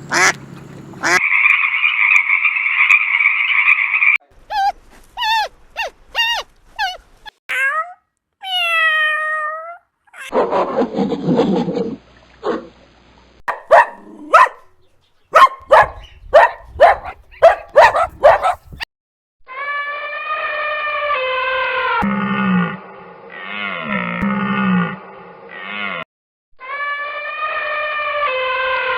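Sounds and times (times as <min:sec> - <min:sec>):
dog whining: 0:04.5 - 0:07.1, 0:15.4 - 0:18.8
dog barking: 0:13.5 - 0:14.7, 0:15.3 - 0:18.8
dog howling: 0:15.4 - 0:18.7
dog growling: 0:16.8 - 0:18.8.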